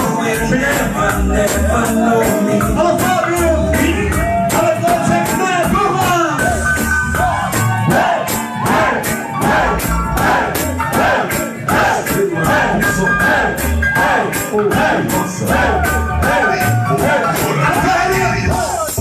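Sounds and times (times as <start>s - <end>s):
reggae song over sound system: 0.0s - 19.0s.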